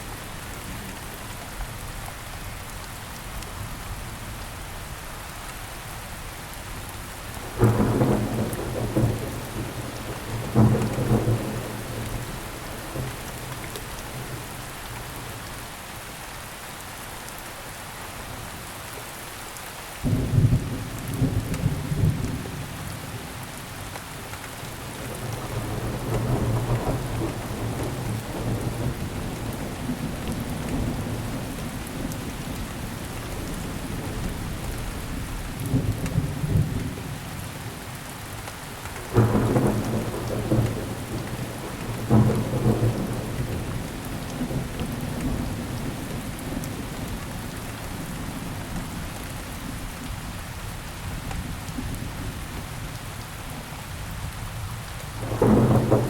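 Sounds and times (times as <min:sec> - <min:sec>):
rain falling: 0:00.0 - 0:56.0
thunder rumbling: 0:07.6 - 0:14.5, 0:24.9 - 0:37.2, 0:39.1 - 0:47.2, 0:55.2 - 0:56.0
thunder claps: 0:39.1 - 0:47.1, 0:55.2 - 0:56.0.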